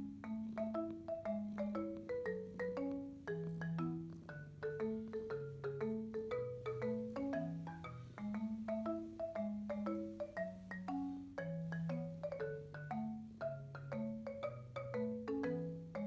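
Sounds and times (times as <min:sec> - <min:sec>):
bouncy marimba-like tune: 0:00.0 - 0:16.0.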